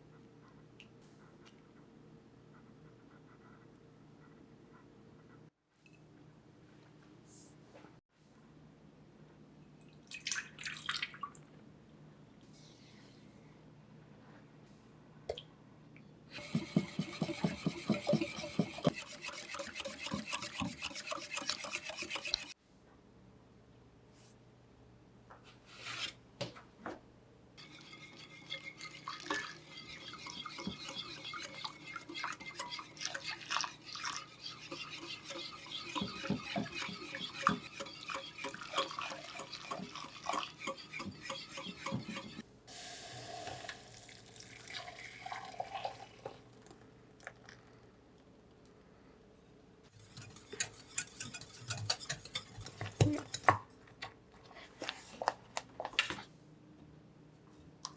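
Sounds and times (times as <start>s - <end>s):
utensil stirring against bowl: 16.3s - 22.6s, 27.6s - 42.4s, 49.9s - 53.6s
utensil clinking on bowl: 50.0s - 53.6s.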